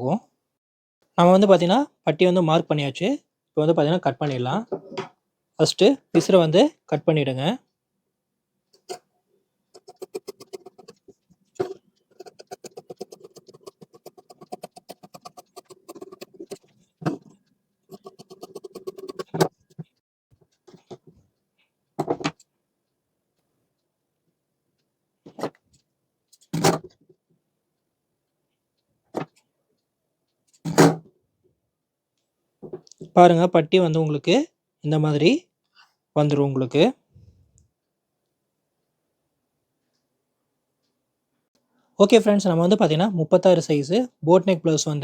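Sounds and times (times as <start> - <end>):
scissors snipping fabric: 9.8 - 11.0, 11.6 - 17.2, 17.9 - 19.7.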